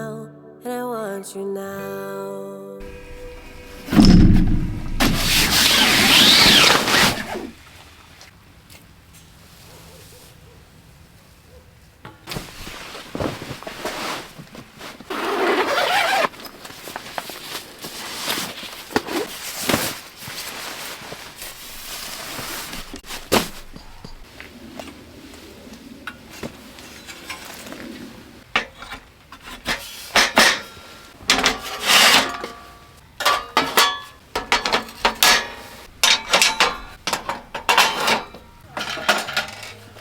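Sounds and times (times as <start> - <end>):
metal and wood items clinking: 2.8 - 7.5, 21.4 - 25.0, 26.1 - 40.0.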